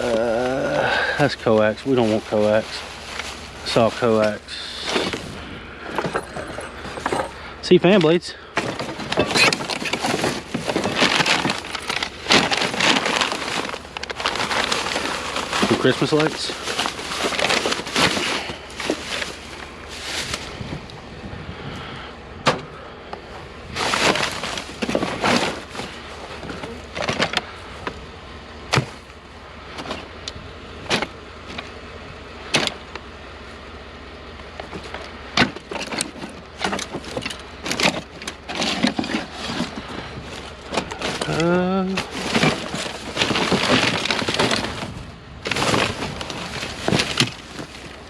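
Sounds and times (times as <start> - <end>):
knocks and clicks of junk: 0.0 - 21.0, 22.4 - 23.2, 23.8 - 28.0, 28.7 - 31.8, 32.4 - 33.1, 34.3 - 48.0
rustling and clattering: 0.0 - 21.0, 22.4 - 28.0, 28.6 - 31.8, 34.4 - 48.0.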